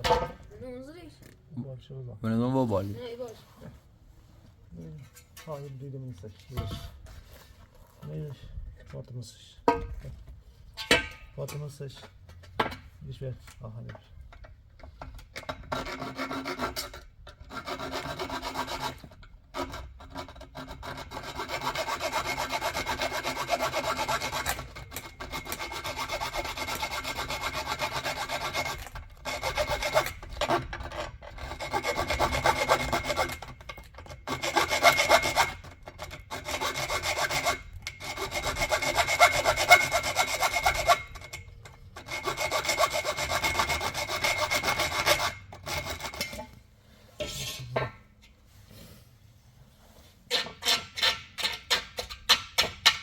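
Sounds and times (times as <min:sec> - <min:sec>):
hand tool scraping hard surface: 0:15.4 - 0:49.2, 0:49.8 - 0:53.0.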